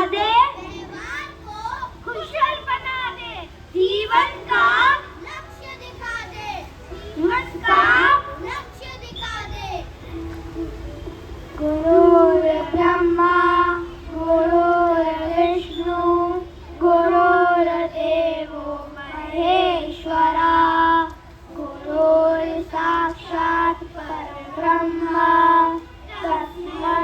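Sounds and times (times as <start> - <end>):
children singing slow song: 3.8 - 8.8, 11.5 - 27.0.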